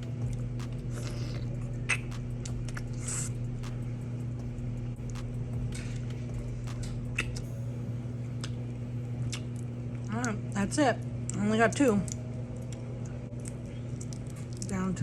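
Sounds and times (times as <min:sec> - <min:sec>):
low hum: 0:00.0 - 0:15.0
chewing: 0:09.2 - 0:10.1, 0:12.0 - 0:14.8.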